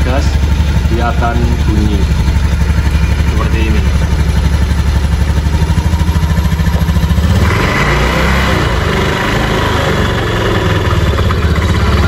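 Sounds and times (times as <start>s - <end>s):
rough harsh transmission noise: 0.0s - 7.5s
scooter engine idling: 0.0s - 12.0s.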